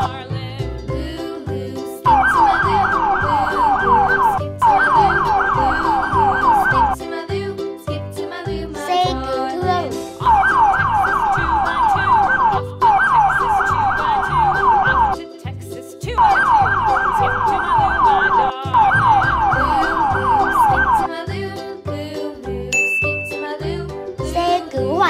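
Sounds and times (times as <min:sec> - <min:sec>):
children's music with beat: 0:00.0 - 0:25.0
yelping emergency siren: 0:02.1 - 0:07.0, 0:10.2 - 0:15.2, 0:16.2 - 0:21.1.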